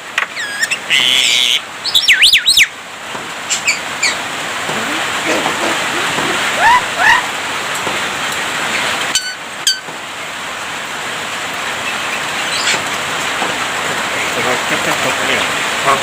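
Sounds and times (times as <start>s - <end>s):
myna calling: 0.4s - 2.7s, 3.5s - 7.4s.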